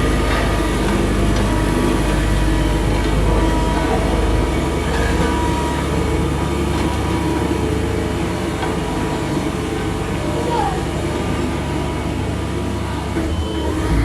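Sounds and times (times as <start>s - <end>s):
diesel engine rumbling: 12.9s - 14.0s.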